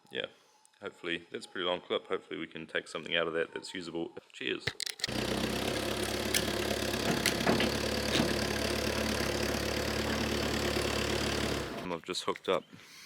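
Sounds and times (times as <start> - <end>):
vehicle engine idling: 5.1 - 11.9
sharp clicks or knocks: 6.0 - 8.7.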